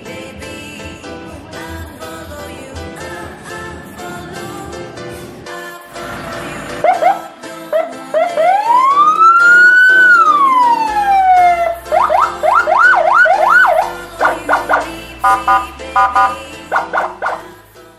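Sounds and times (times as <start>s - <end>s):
electronic vehicle siren: 6.8s - 17.6s.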